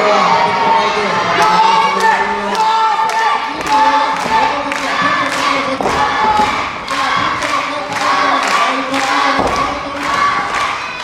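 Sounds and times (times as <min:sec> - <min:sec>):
audience chanting in rhythm: 0:00.0 - 0:11.0
regular thuds: 0:03.5 - 0:10.8.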